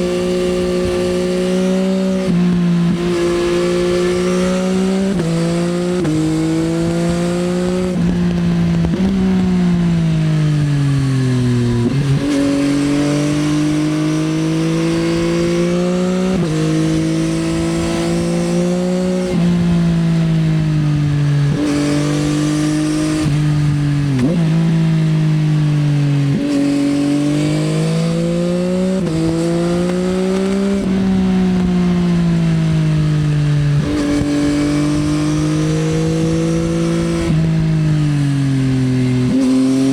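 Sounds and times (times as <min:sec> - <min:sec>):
motorcycle engine revving through gears: 0:00.0 - 0:39.9.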